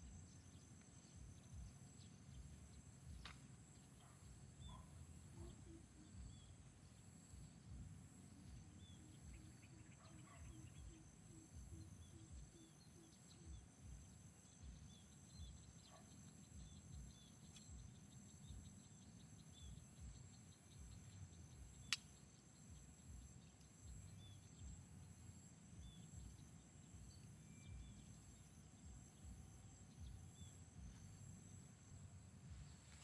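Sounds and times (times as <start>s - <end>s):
insect chorus chirping: 0.0s - 33.0s
sharp click: 21.8s - 22.2s.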